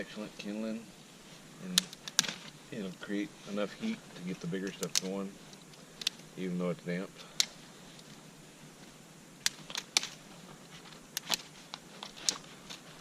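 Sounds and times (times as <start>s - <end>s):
twigs snapping: 1.7s - 2.6s, 3.8s - 6.3s, 7.2s - 8.2s, 9.4s - 13.0s.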